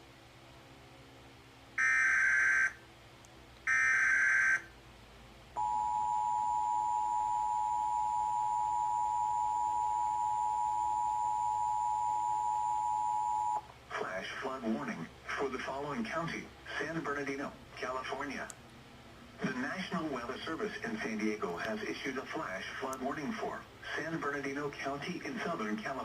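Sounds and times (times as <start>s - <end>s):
data tone bursts: 5.6s - 13.6s
two-tone attention signal: 5.6s - 13.6s.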